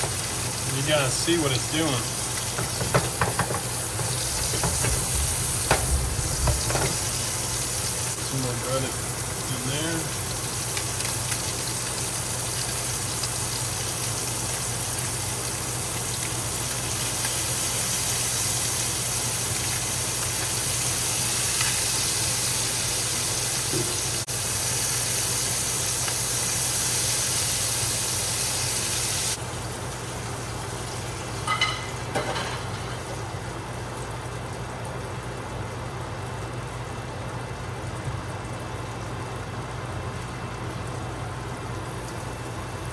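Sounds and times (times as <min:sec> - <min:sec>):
fish sizzling in frying pan: 0:00.0 - 0:38.0
low hum: 0:03.8 - 0:08.3.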